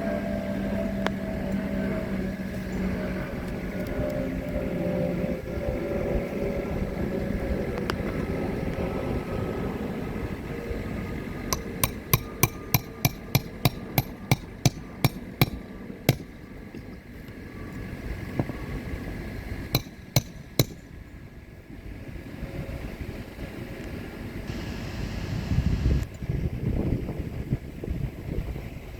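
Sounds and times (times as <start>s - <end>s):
hammer striking nails: 11.5s - 16.3s, 19.8s - 20.8s.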